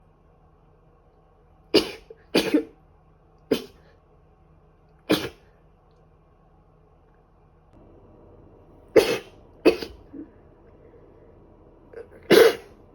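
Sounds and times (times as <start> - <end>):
person coughing: 1.8 - 2.8, 8.9 - 10.4, 11.9 - 12.8.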